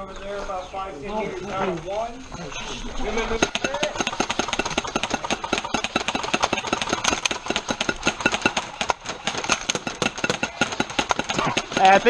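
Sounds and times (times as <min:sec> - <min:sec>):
airsoft guns firing automatic bursts: 0:03.0 - 0:12.0.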